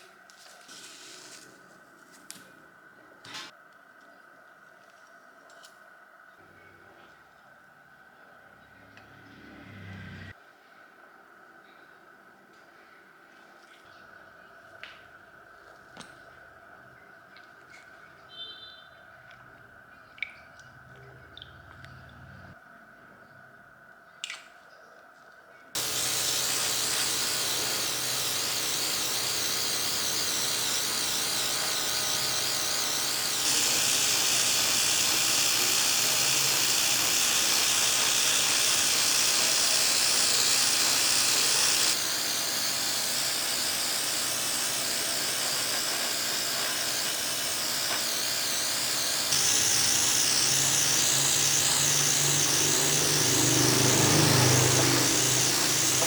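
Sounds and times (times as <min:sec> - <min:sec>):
hissing spray: 0:25.8 - 0:56.0
low motor hum: 0:25.8 - 0:56.0.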